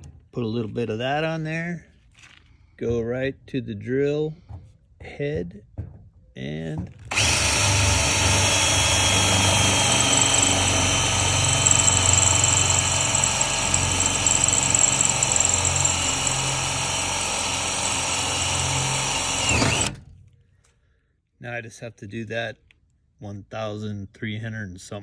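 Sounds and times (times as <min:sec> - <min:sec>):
electric drill whining: 0:07.1 - 0:20.0.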